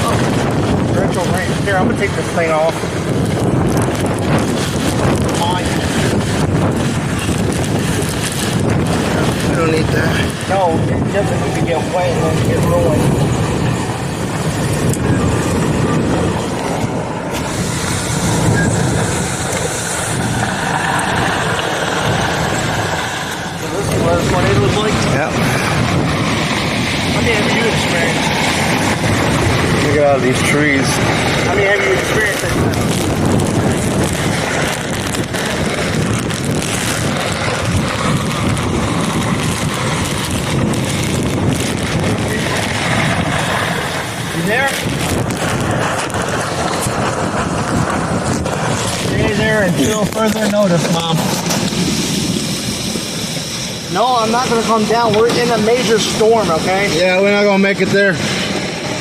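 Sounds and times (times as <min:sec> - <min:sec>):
car running noise: 0:00.0 - 0:59.0
heavy rain on car body: 0:00.0 - 0:59.0
storm wind: 0:00.0 - 0:59.0.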